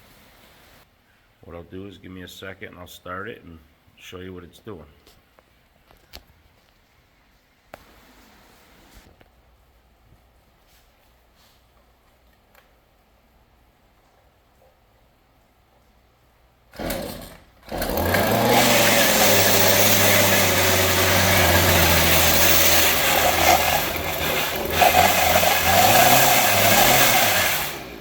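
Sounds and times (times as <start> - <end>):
string trimmer engine running: 16.8 - 28.0.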